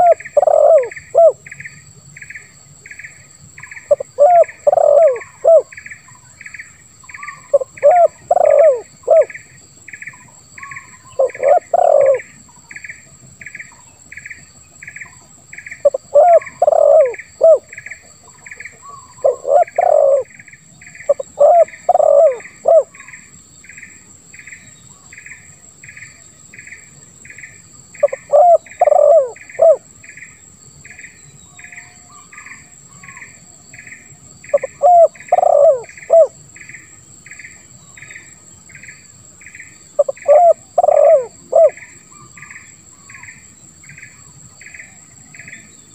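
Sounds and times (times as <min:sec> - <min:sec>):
dove cooing: 0:00.0 - 0:01.5, 0:03.6 - 0:05.8, 0:07.2 - 0:09.5, 0:10.6 - 0:12.4, 0:15.8 - 0:23.1, 0:28.0 - 0:29.9, 0:34.5 - 0:36.4, 0:40.0 - 0:42.5
high insect whine: 0:00.0 - 0:45.9
insect chirping: 0:00.0 - 0:45.9.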